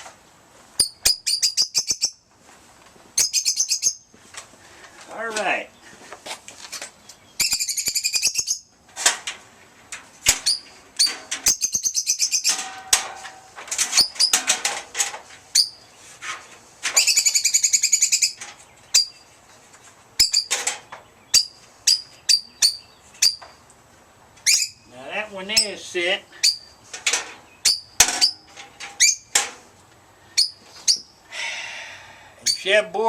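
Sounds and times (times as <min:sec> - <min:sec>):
caged birds chirping: 0:00.0 - 0:33.0
bird trills: 0:00.8 - 0:02.2, 0:03.2 - 0:04.1, 0:07.4 - 0:08.7, 0:10.4 - 0:12.6, 0:21.3 - 0:23.6, 0:24.4 - 0:24.9, 0:26.3 - 0:26.8, 0:27.5 - 0:29.3, 0:30.3 - 0:31.1.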